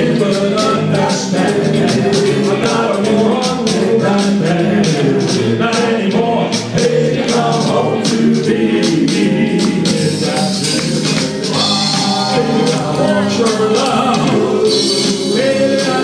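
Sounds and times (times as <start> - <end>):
bright percussion beat: 0.0 - 16.0
vocal group singing in harmony: 0.0 - 16.0.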